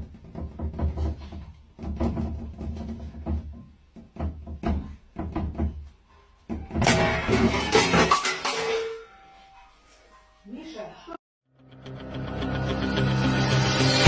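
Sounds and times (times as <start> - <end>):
music with bass and percussion: 12.1 - 14.0.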